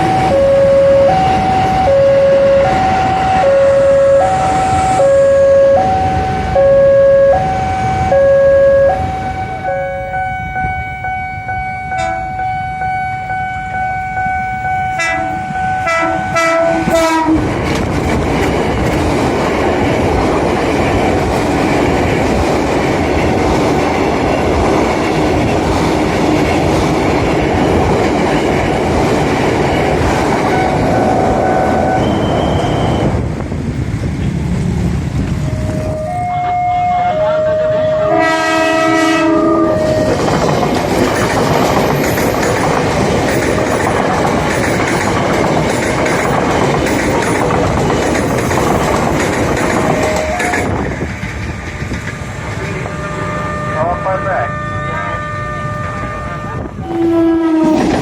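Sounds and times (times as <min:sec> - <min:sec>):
electric train horn: 0:00.0 - 0:17.5, 0:30.5 - 0:33.2, 0:35.4 - 0:40.2, 0:49.8 - 0:50.7, 0:52.7 - 0:58.0
train rushing past: 0:00.0 - 0:58.0
train wheels clattering on rails: 0:16.4 - 0:35.9, 0:39.7 - 0:53.0, 0:57.3 - 0:58.0.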